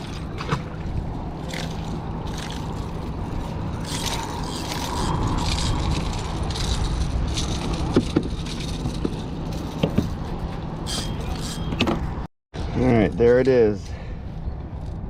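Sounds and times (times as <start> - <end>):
wind and water rumble: 0.0 - 15.0.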